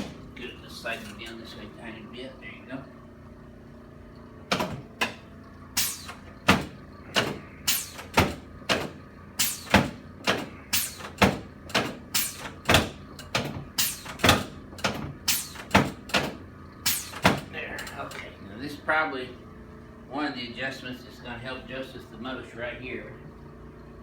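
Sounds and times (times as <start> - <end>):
sharp knocks: 4.5 - 17.5.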